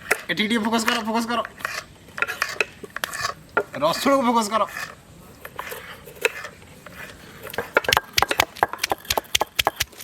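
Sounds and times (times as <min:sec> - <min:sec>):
knife chopping on wooden board: 0:07.8 - 0:10.0.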